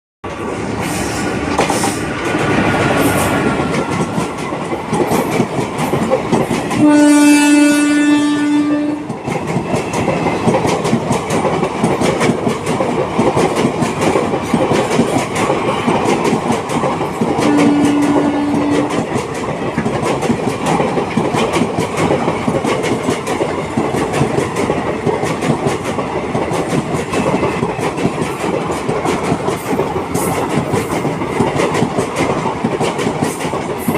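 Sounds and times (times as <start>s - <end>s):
train running noise: 0.2s - 33.9s
locomotive horn blasts: 6.8s - 9.1s, 17.4s - 18.9s.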